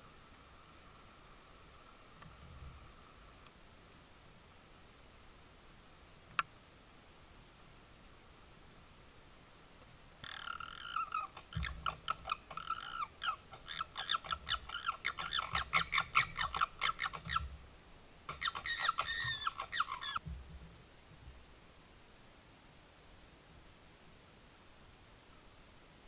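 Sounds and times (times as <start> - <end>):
fox squawking calls: 10.2 - 17.5, 18.3 - 20.2
low thumps: 20.2 - 21.4.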